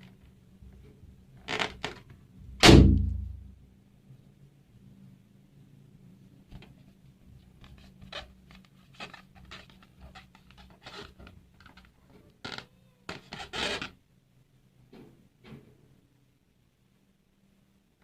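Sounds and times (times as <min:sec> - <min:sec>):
rubber balloons rubbing and squeaking: 0:01.4 - 0:02.0, 0:07.5 - 0:14.0.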